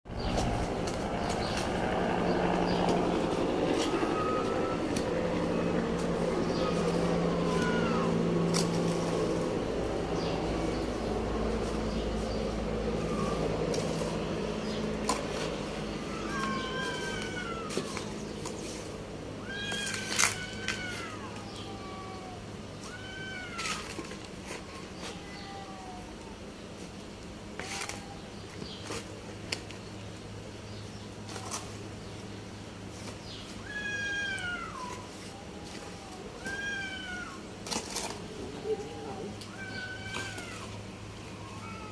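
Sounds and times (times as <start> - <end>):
engine hum: 0.1 - 41.9
cat meowing: 7.4 - 8.2, 16.0 - 18.0, 19.4 - 23.9, 25.0 - 26.1, 33.6 - 37.4, 38.6 - 41.9.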